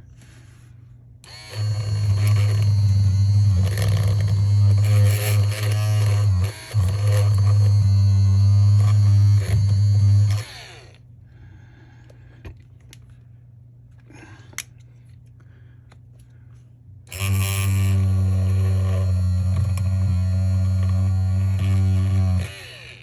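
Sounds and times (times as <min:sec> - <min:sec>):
loud steady low hum: 0:00.0 - 0:10.5, 0:15.5 - 0:22.5.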